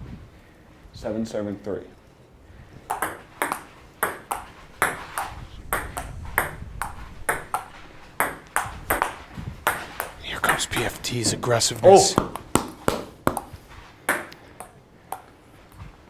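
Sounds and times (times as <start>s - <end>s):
table tennis ball clicking: 2.9s - 11.1s, 11.9s - 15.3s.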